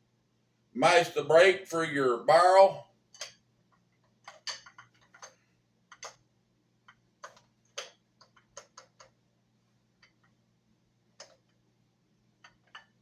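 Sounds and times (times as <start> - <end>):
gun action clicks and metal knocks: 4.0 - 6.2.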